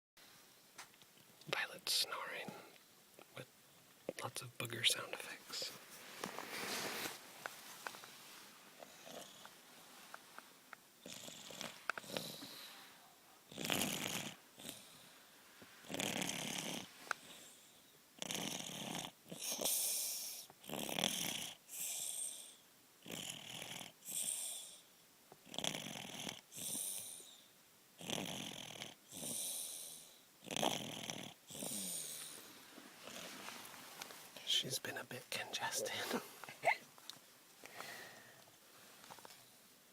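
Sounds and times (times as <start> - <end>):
baby snoring: 8.8 - 9.5, 11.0 - 12.8, 13.5 - 15.1, 15.8 - 24.9, 25.5 - 27.3, 28.0 - 33.6
snuffly congested nose breathing: 11.1 - 15.2, 31.6 - 34.0, 35.6 - 36.6, 37.6 - 38.5.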